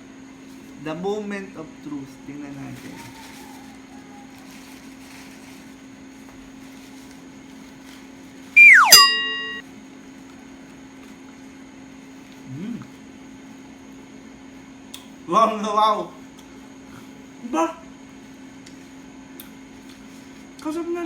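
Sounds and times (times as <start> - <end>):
loud tone sliding down in pitch: 8.6 - 9.6.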